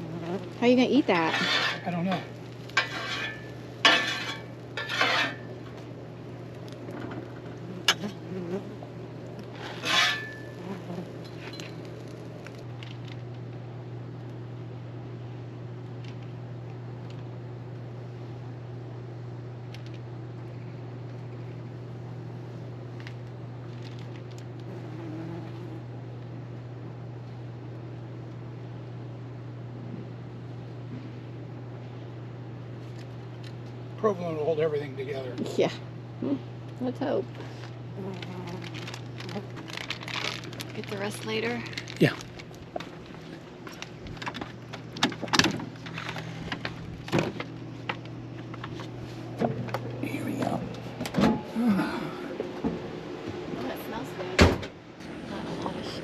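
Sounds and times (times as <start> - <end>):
steady low hum: 0.0 - 56.0
metal spatula scraping griddle: 1.2 - 2.2, 2.8 - 5.5, 9.6 - 11.6.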